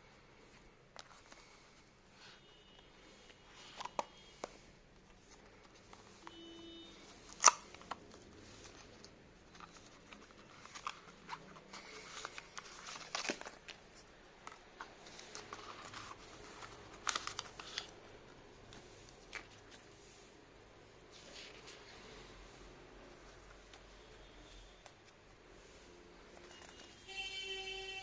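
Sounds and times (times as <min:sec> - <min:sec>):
packaging crinkling rustles: 0:03.2 - 0:20.0
packaging clicks and taps: 0:03.6 - 0:18.0.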